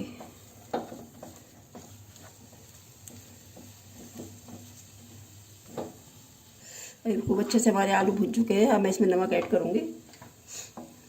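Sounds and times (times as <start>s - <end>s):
spatula scraping a pan: 0.0s - 7.6s.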